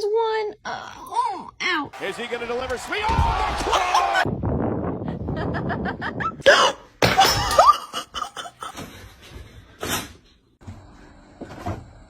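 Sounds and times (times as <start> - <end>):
person laughing in rapid bursts: 3.6 - 4.3, 5.1 - 8.8.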